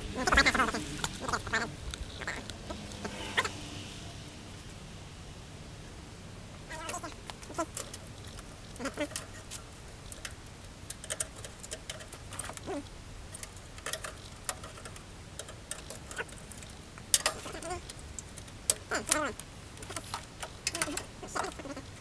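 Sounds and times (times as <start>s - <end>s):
squeaks sliding in pitch: 0.2s - 3.7s.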